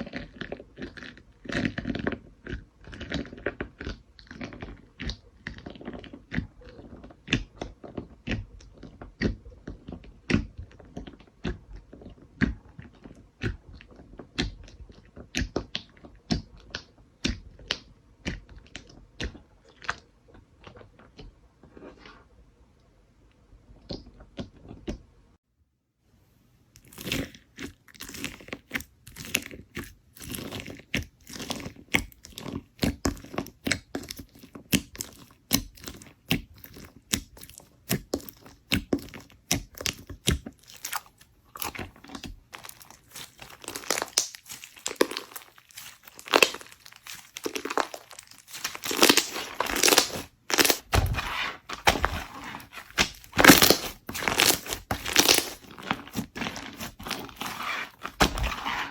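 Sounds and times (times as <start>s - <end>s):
slime crackling and popping: 26.8s - 58.9s.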